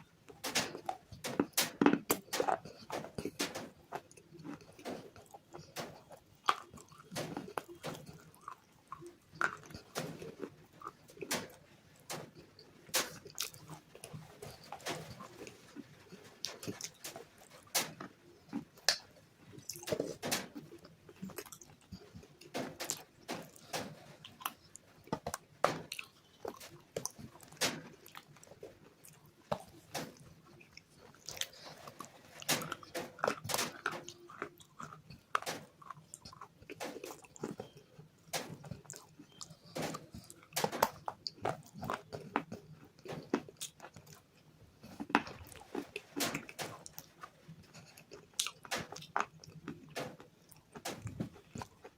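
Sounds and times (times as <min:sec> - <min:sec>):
crunchy biting and chewing: 0:00.3 - 0:51.9.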